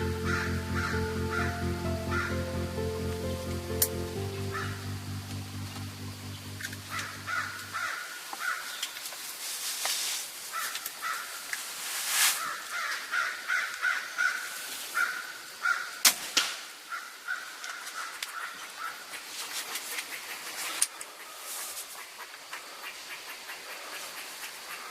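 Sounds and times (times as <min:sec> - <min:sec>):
background music: 0:00.0 - 0:07.8
crows calling: 0:00.2 - 0:01.5, 0:02.1 - 0:02.4, 0:06.9 - 0:08.8, 0:10.5 - 0:11.4, 0:12.4 - 0:16.0, 0:16.9 - 0:19.0.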